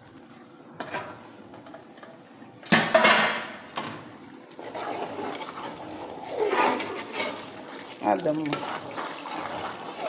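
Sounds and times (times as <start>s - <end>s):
water running into a pot: 2.6s - 10.0s
pot clattering: 2.7s - 3.6s.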